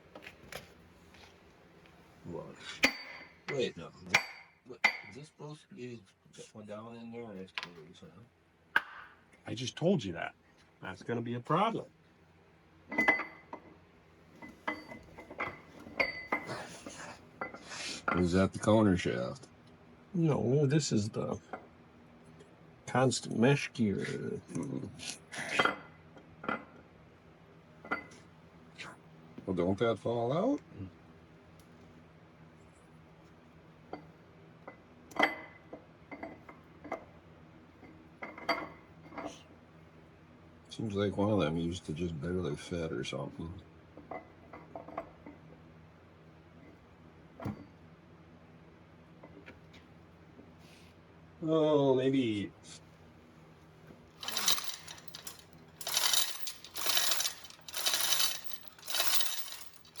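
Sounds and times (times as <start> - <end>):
metal parts clinking: 54.2 - 60.0
metallic ratcheting: 54.2 - 60.0.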